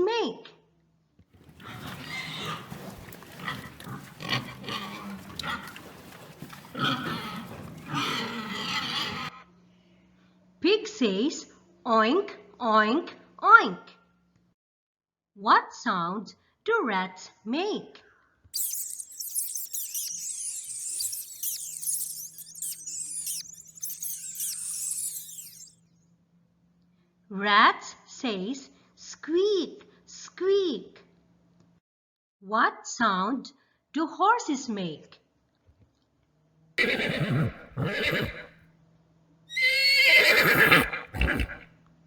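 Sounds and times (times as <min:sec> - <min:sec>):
horse whinnying: 0:01.5 - 0:06.0, 0:06.6 - 0:09.3, 0:18.6 - 0:25.7, 0:36.8 - 0:38.5, 0:39.5 - 0:41.7
horse breathy snorts: 0:01.5 - 0:09.3, 0:36.8 - 0:38.5, 0:40.4 - 0:41.6
rats squeaking: 0:18.6 - 0:25.7, 0:36.8 - 0:38.4, 0:39.6 - 0:41.6.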